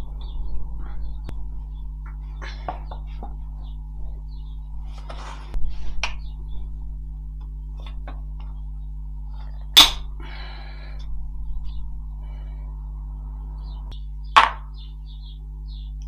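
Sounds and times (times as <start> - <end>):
steady low hum: 0.0 - 16.0
sharp metal knocks: 9.8 - 10.1.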